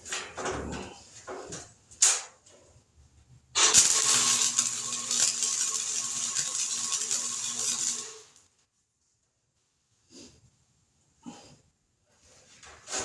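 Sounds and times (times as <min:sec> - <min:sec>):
welding arc crackling sizzle: 0:03.6 - 0:08.5.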